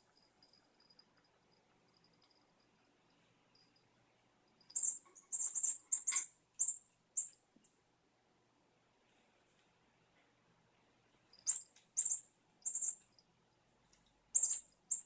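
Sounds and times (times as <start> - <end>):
squeaky toy squeaking: 4.8 - 6.8.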